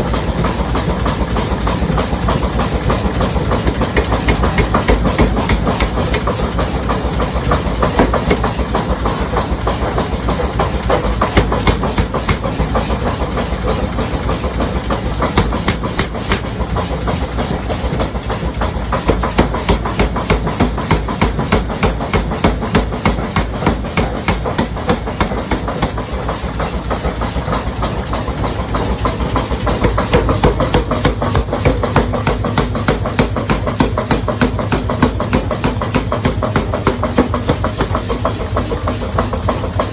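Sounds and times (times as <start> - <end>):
machinery rapid knocking: 0.0 - 39.9.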